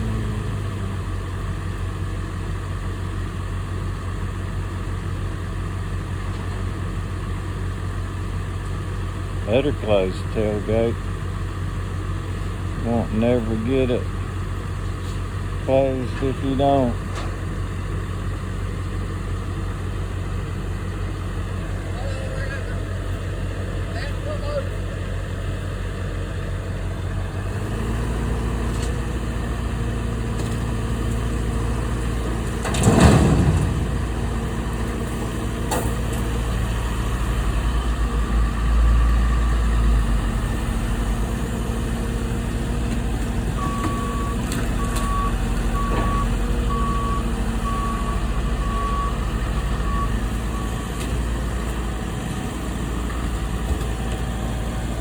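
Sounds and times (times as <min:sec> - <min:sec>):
heavy machinery engine running: 0:00.0 - 0:55.0
loud crash: 0:32.6 - 0:36.0
reversing alarm beeping: 0:43.6 - 0:50.8.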